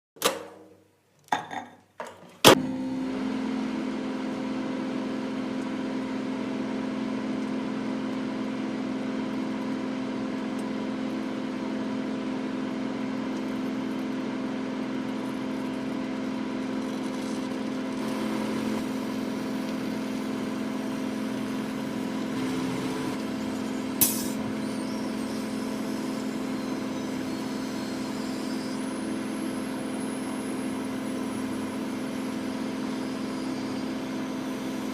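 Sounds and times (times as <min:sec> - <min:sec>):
microwave oven clicks: 0:00.2 - 0:00.7
microwave oven humming: 0:02.5 - 0:34.9
sharp snap: 0:24.0 - 0:24.4.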